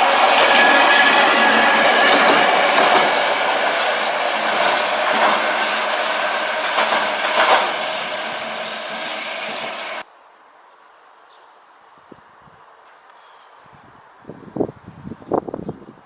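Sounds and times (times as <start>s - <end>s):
tram wheels clacking over rail joints: 0.0s - 10.0s.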